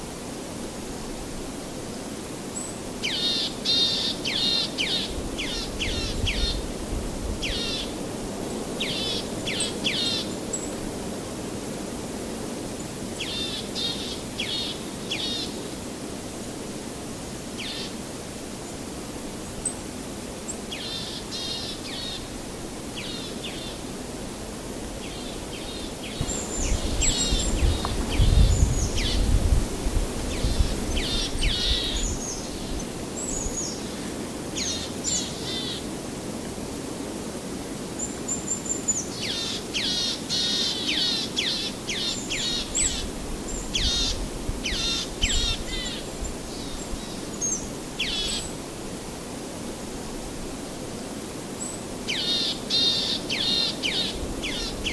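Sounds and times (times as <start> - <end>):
steady background hiss: 0.0 - 54.9
small birds chirping: 25.0 - 29.3.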